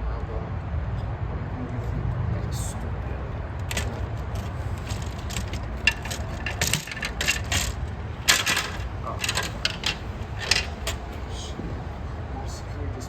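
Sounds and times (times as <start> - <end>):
low background rumble: 0.0 - 13.0
plastic toy parts clicking: 3.7 - 11.0.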